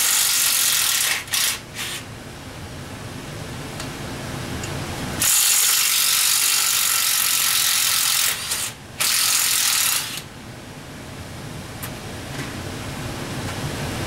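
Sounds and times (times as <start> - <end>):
pneumatic air ratchet running: 0.0 - 2.1, 5.2 - 10.3.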